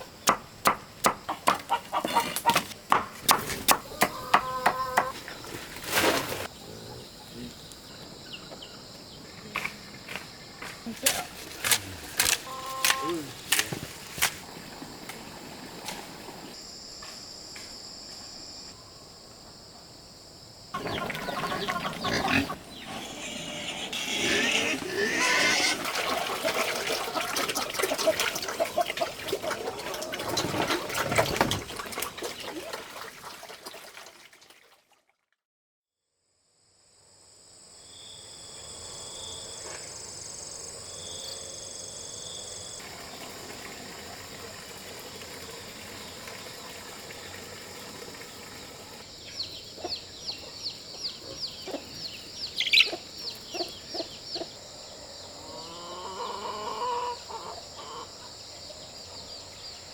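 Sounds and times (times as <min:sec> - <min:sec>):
insects buzzing: 0:00.0 - 0:27.2, 0:36.5 - 0:59.9
pigs vocalizing: 0:20.8 - 0:31.4.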